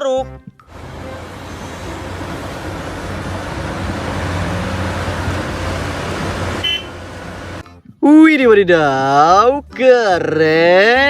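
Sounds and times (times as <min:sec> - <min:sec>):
vehicle engine humming: 0:00.6 - 0:08.0
rushing noise: 0:00.7 - 0:07.6.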